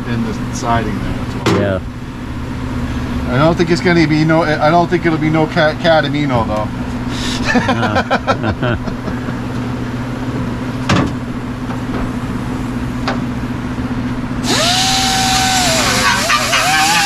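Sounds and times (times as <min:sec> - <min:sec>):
power tool whining and hissing: 0:14.4 - 0:17.0.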